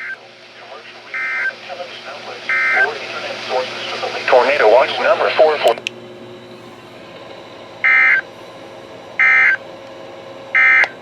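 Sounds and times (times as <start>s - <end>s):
radio hiss: 0.2s - 5.8s.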